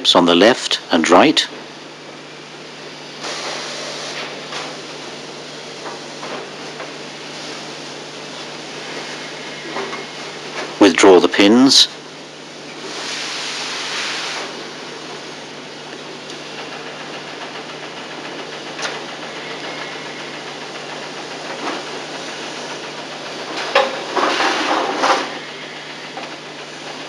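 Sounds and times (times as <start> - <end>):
steady hiss and low hum: 0.0 - 16.8.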